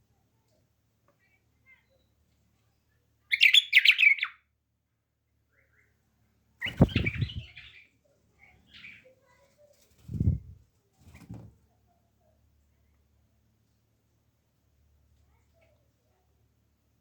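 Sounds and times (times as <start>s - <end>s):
bird chirping: 3.3s - 4.4s, 6.6s - 7.9s.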